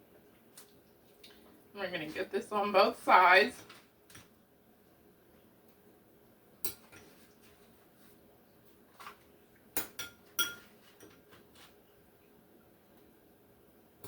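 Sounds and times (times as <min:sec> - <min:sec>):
utensil clinking against a dish: 0:09.8 - 0:11.2.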